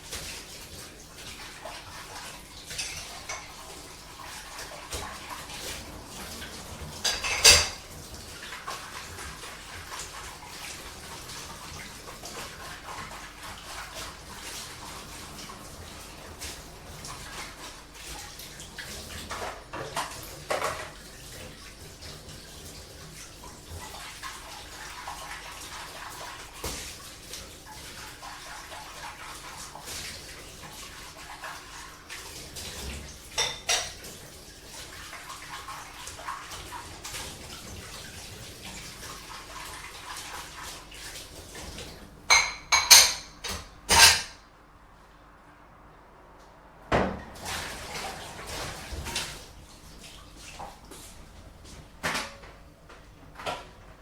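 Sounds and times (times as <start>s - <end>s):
running water: 0.0s - 54.0s
dishes clattering: 6.9s - 7.9s, 33.3s - 34.1s, 42.3s - 44.4s, 52.0s - 52.6s
dishes clinking: 7.0s - 7.9s, 33.4s - 34.0s, 42.3s - 44.4s.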